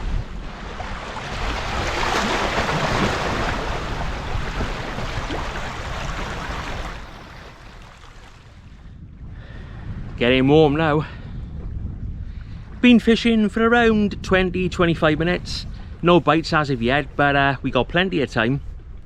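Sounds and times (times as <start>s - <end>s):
wind buffeting microphone: 0.0s - 19.0s
sea water washing over rocks: 0.5s - 8.7s.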